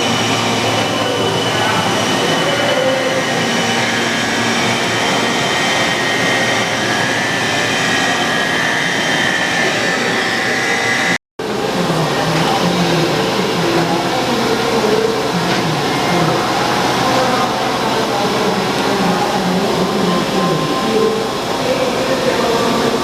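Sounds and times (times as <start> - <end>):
lathe running with whine: 0.0 - 23.0.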